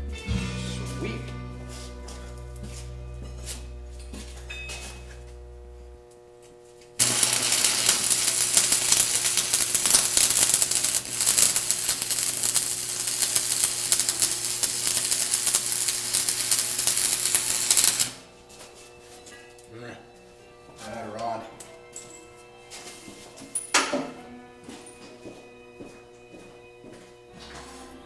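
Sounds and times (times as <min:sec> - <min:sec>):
arc welding crackle: 0:07.0 - 0:18.3.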